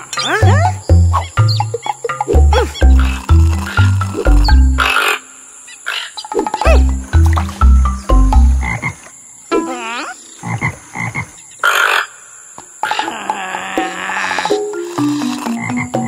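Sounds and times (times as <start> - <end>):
cartoon frog croaking: 0.0 - 12.2, 12.8 - 16.0.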